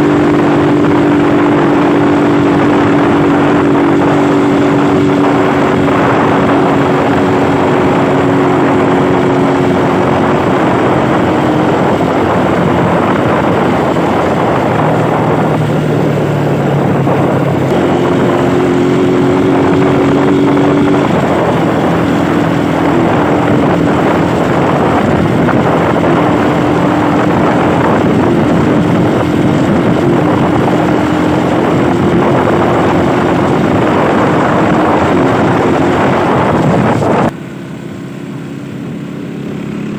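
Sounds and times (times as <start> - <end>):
wind noise on microphone: 0.0 - 37.4
motorcycle engine running: 0.0 - 39.9.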